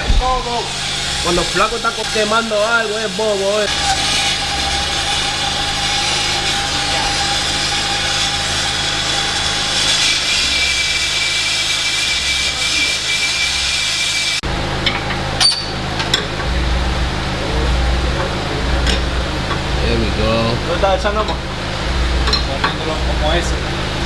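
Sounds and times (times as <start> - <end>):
power tool whining: 0.0 - 24.0.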